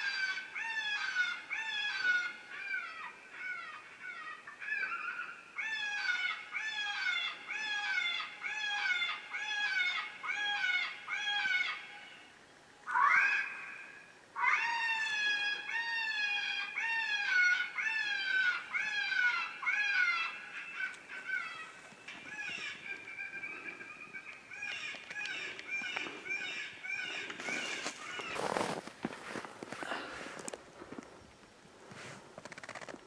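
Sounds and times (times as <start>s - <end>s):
rustle or scuff: 27.4s - 31.0s, 31.9s - 32.3s.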